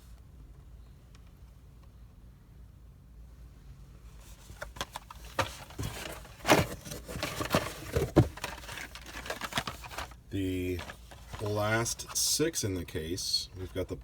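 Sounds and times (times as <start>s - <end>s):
plastic packaging rustling and clicking: 4.4s - 12.2s.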